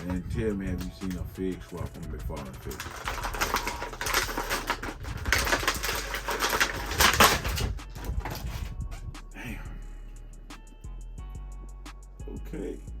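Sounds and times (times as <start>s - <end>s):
plastic packaging crinkling and snapping: 0.0s - 8.7s.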